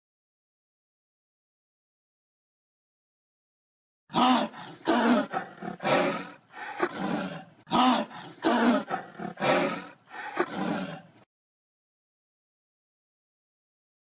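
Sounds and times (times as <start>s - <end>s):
animal roaring: 4.1s - 11.2s.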